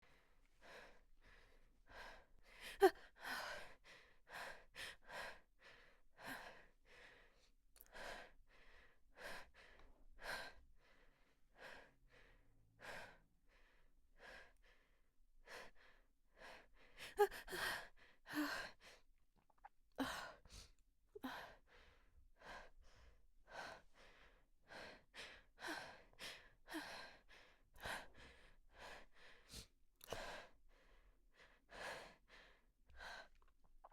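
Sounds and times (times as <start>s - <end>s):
woman's hitching breathy inhalations: 20.0s - 33.5s.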